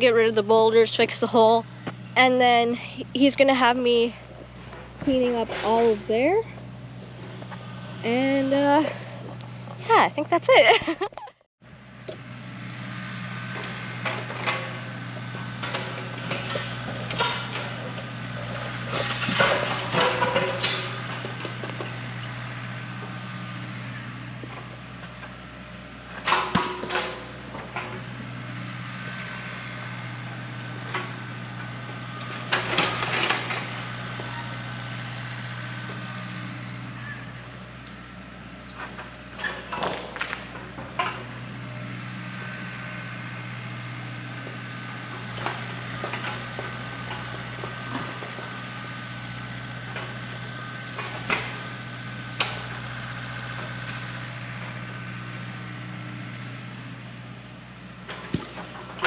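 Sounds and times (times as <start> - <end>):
diesel engine running: 0.0 - 59.0
sharp knocks and clatter: 13.5 - 22.4, 26.2 - 28.0.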